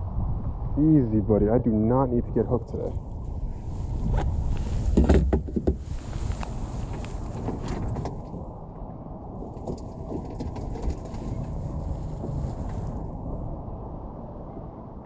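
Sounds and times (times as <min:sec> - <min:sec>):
wind rumbling on microphone: 0:00.0 - 0:15.0
knocks and clatter on kayak: 0:04.9 - 0:05.9, 0:09.4 - 0:11.6.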